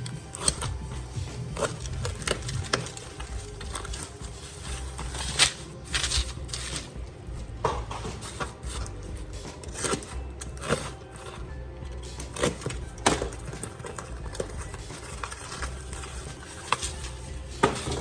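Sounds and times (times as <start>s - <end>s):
packaging rustling: 0.0s - 7.1s.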